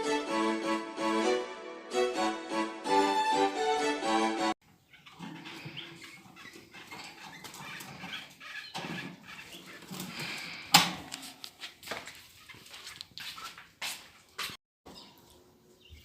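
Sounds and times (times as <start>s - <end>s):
faint canary sounds: 4.6s - 10.8s
small movements: 4.6s - 15.5s.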